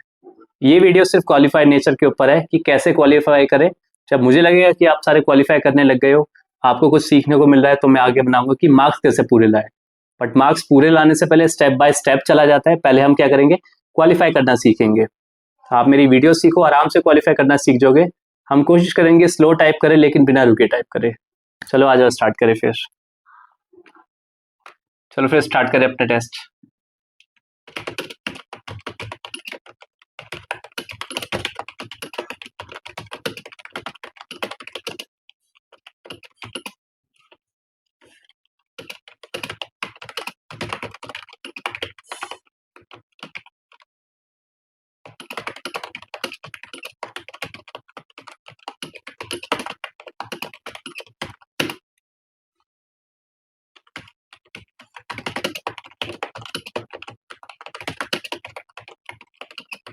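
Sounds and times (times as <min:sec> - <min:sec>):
computer keyboard typing: 0:27.7 - 0:36.8, 0:38.8 - 0:43.8, 0:45.0 - 0:51.8, 0:53.8 - 0:59.9.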